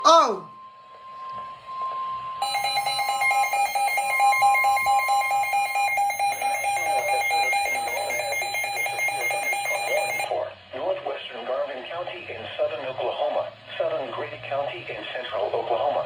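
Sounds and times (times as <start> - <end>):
steady warning tone: 0.0 - 10.3
rapid electronic alert beeping: 5.2 - 10.3.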